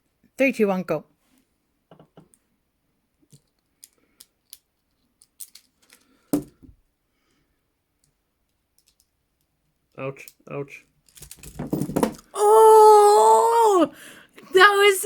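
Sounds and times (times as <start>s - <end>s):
metallic clicks of handcuffs: 3.3s - 6.2s, 8.0s - 9.5s, 11.0s - 11.6s.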